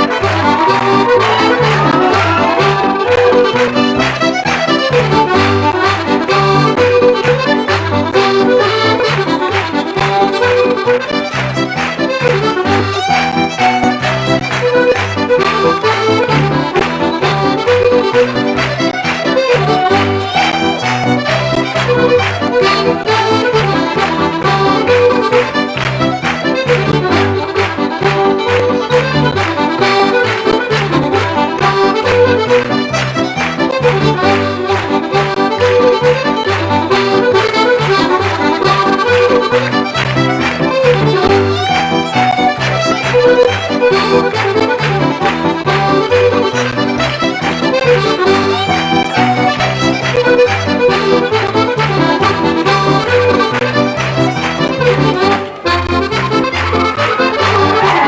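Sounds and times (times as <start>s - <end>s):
accordion playing: 0.0s - 58.0s
fiddle playing fast tune: 0.0s - 58.0s.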